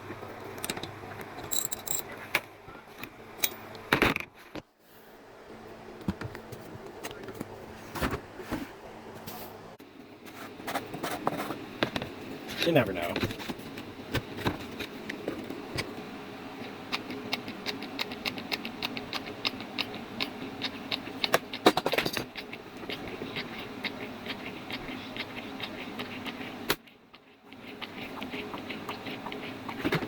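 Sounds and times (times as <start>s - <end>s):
steady low hum: 0.0s - 30.0s
small parts clicking and rattling: 0.6s - 2.4s.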